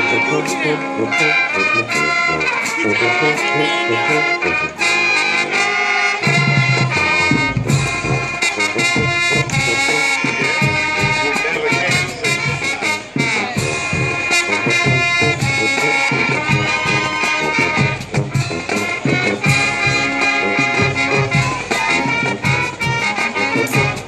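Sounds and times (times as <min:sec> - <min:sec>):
band playing brass-led music: 0:00.0 - 0:24.0
drum hits: 0:06.3 - 0:10.0.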